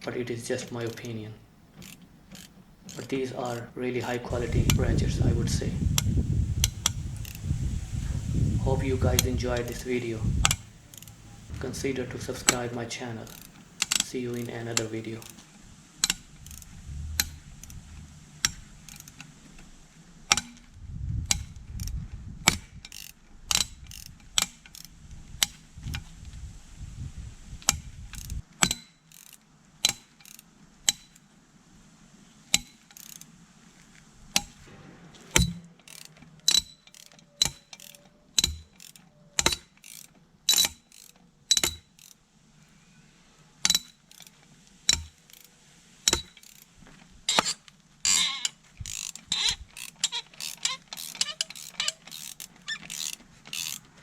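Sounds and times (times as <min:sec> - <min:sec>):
ratchet clicking: 0:00.0 - 0:26.2, 0:27.6 - 0:31.3, 0:32.5 - 0:33.4, 0:34.3 - 0:34.7, 0:35.3 - 0:42.2, 0:43.6 - 0:46.7, 0:47.3 - 0:54.0
low rumbling noise: 0:03.7 - 0:28.5.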